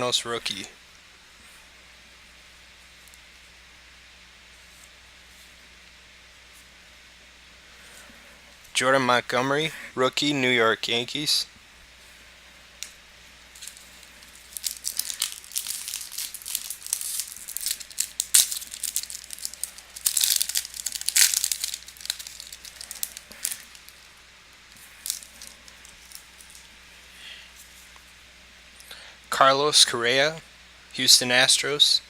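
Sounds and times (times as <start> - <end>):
wrapper crinkling and tearing: 13.5 - 26.8
wrapper sharp snap: 13.6 - 24.0.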